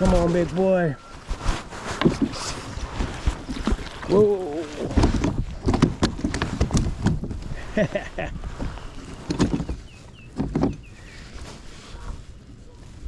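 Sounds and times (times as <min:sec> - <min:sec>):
water splashing: 0:00.0 - 0:13.0
knocks and thumps on kayak: 0:01.2 - 0:11.4.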